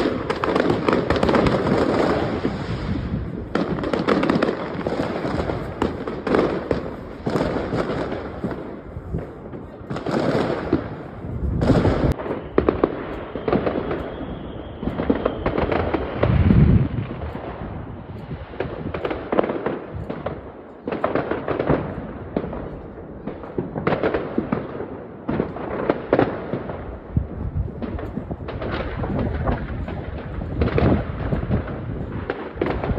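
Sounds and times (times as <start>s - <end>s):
deep firework boom: 0.0s - 14.0s, 21.2s - 32.9s
fireworks bangs and crackling: 0.0s - 32.9s.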